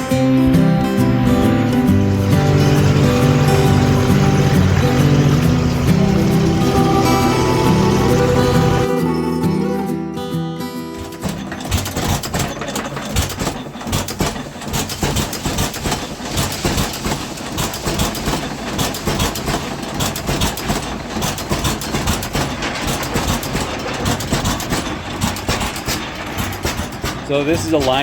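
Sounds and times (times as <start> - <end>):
low machinery hum: 0.4 - 9.4
machinery clattering rapidly: 0.9 - 9.1, 11.0 - 28.0.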